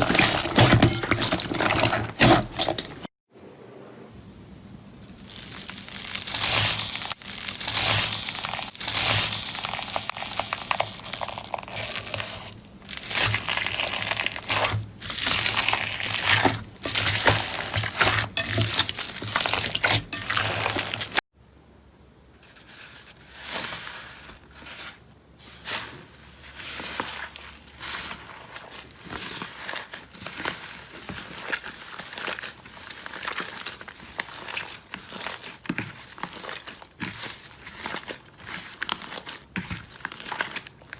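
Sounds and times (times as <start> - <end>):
slime crackling and popping: 5.0 - 21.2, 27.9 - 40.9.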